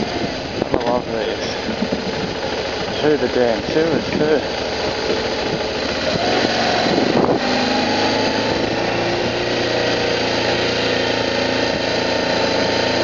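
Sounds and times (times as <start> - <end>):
motorcycle engine running: 0.0 - 13.0
wind noise rushing: 4.9 - 9.6.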